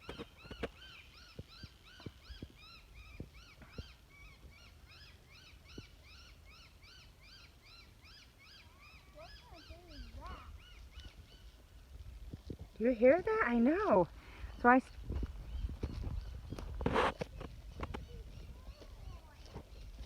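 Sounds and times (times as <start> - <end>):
bird distress calls: 0.0 - 11.6.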